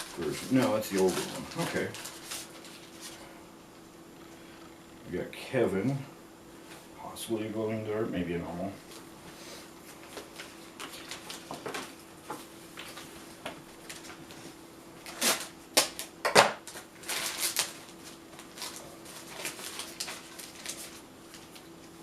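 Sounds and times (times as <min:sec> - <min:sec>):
stickers and packaging rustling: 0:00.0 - 0:03.3, 0:09.9 - 0:14.4, 0:15.0 - 0:22.0
faint steady hum: 0:00.0 - 0:22.0.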